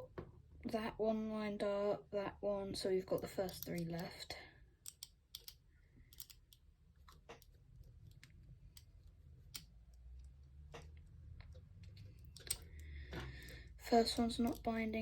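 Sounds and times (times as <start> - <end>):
lock pick clicking in a lock: 4.8 - 10.3, 11.9 - 13.5.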